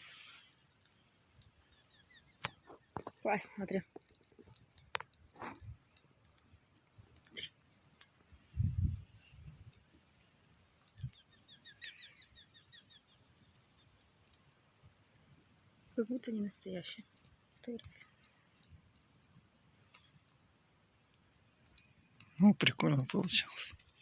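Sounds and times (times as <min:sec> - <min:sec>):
campfire crackling and popping: 0:00.0 - 0:24.0
bird chirping: 0:00.8 - 0:03.4, 0:10.8 - 0:15.3.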